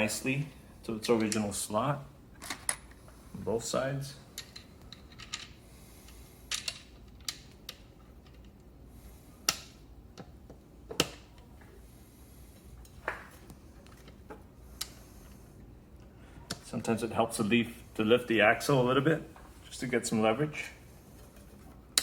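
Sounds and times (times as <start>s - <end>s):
metal parts clicking and knocking: 4.4s - 5.6s.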